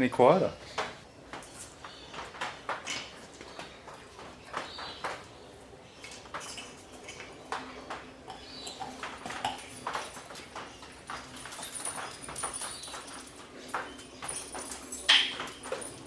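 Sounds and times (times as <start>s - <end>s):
clicks clatters and knocks: 6.0s - 16.0s.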